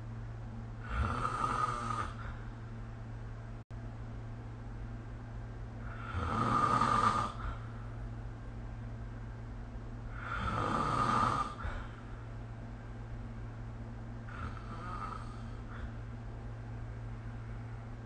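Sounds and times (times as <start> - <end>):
steady low hum: 0.0 - 18.0
person snoring: 0.8 - 2.5, 5.8 - 7.8, 10.1 - 12.1, 14.3 - 16.0.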